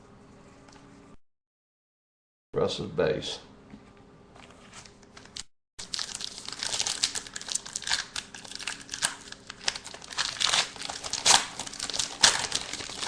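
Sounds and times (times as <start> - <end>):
wrapper crinkling and tearing: 5.2 - 13.0.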